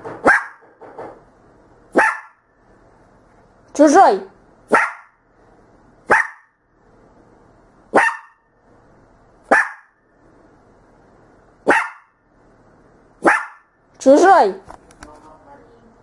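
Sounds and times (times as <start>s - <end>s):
dog barking: 0.2s - 0.7s, 1.9s - 2.4s, 4.7s - 5.2s, 6.1s - 6.6s, 7.9s - 8.5s, 9.5s - 10.0s, 11.6s - 12.2s, 13.2s - 13.8s.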